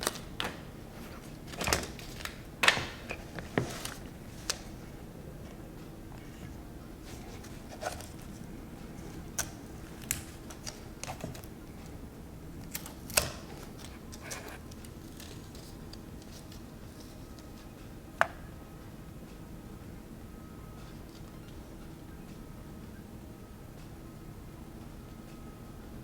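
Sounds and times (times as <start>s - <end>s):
packaging rustling: 0.0s - 4.8s.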